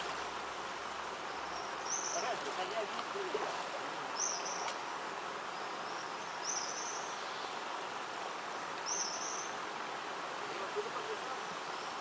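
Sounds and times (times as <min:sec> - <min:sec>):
insect hiss: 0:00.0 - 0:12.0.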